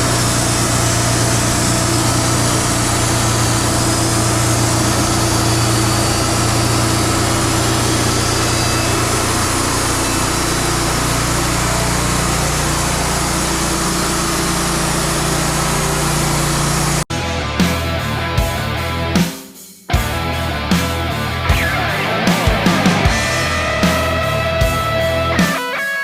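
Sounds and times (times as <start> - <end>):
band sawmill running: 0.0 - 18.0, 20.0 - 25.6
sawmill engine: 0.0 - 18.0, 20.1 - 25.7.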